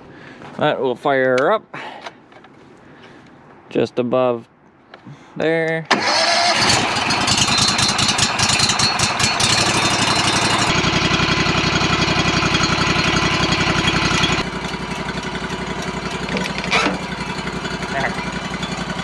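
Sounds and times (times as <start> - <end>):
sawmill engine running: 5.9 - 19.0.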